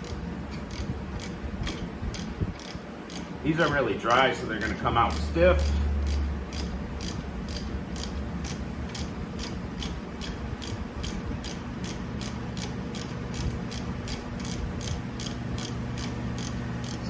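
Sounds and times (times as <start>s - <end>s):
ratchet clicking: 0.0s - 17.0s.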